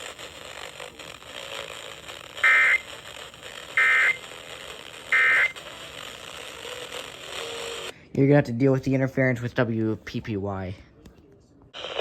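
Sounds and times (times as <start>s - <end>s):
faint radio static: 0.0s - 8.0s, 10.8s - 12.0s
short electronic data bursts: 1.4s - 7.9s.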